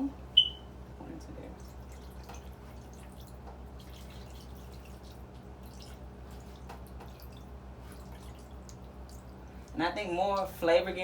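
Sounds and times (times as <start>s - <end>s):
small pops and drips: 1.6s - 9.8s.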